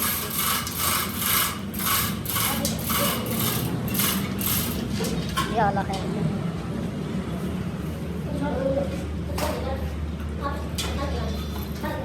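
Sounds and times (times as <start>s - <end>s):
hand tool rasping on metal: 0.0s - 4.9s.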